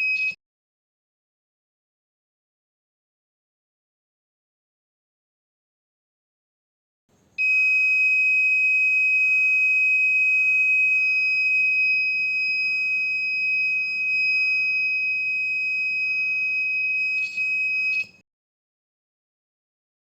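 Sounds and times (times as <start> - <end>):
high-pitched alarm buzzer tone: 7.4 - 18.2.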